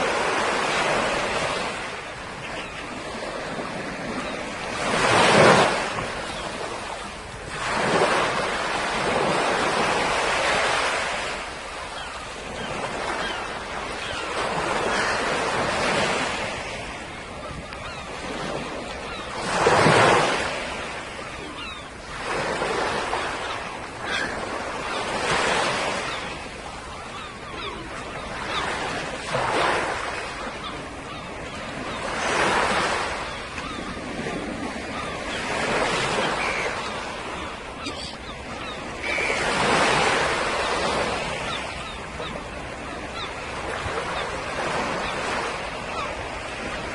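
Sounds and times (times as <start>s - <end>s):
sea waves breaking on shore: 0.0s - 46.9s.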